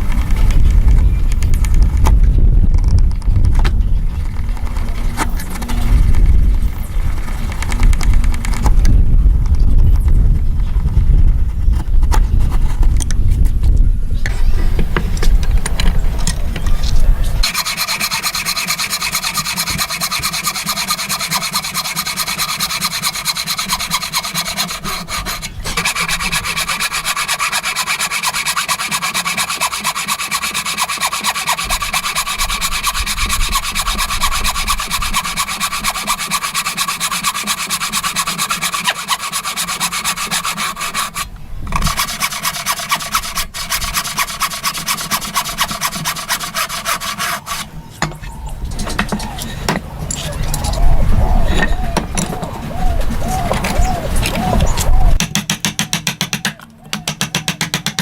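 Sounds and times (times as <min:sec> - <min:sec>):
hand tool rasping wood: 0:03.5 - 0:08.9, 0:17.4 - 0:58.0.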